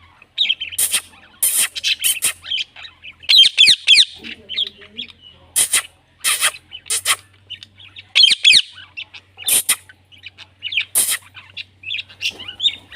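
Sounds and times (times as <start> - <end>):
parrot screeching: 0.0 - 4.1, 8.2 - 9.9
parrot chirping: 0.0 - 12.9.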